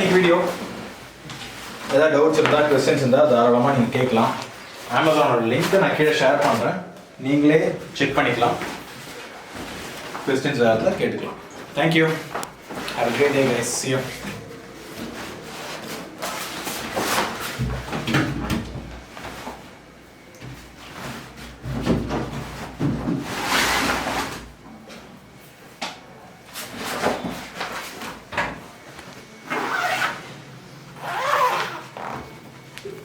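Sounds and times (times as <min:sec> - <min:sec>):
rubbing and sliding handling noises: 0:00.0 - 0:06.8, 0:11.6 - 0:17.9, 0:20.6 - 0:24.6.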